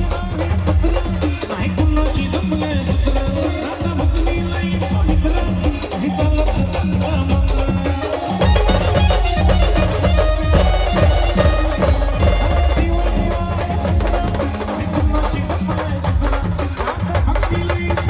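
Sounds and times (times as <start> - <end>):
driving drum beat: 0.0 - 18.0
brass band wind melody: 8.1 - 16.4.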